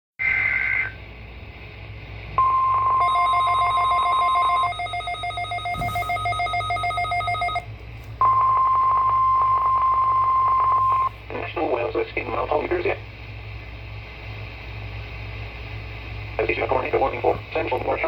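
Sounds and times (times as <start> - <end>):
steady alarm tone: 0.2 - 1.0, 2.4 - 11.2.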